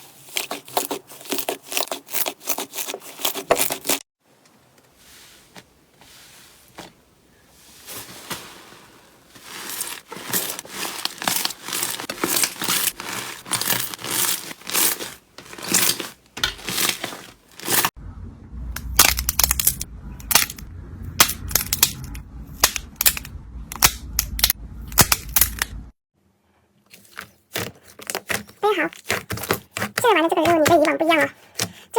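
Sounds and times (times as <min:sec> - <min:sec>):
low hum: 0:18.0 - 0:25.9.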